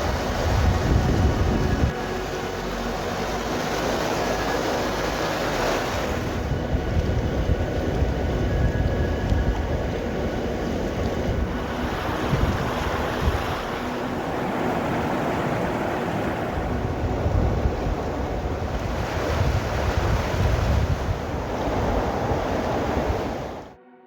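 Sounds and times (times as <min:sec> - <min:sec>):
wind buffeting microphone: 0:00.0 - 0:02.1, 0:05.5 - 0:23.8
loud rushing rumble: 0:05.6 - 0:23.8.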